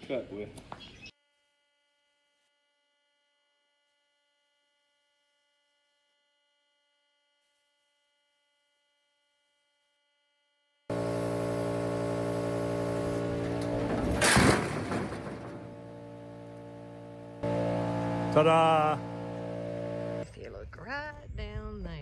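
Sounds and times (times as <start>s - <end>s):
loud steady hum with hiss: 10.9s - 20.2s.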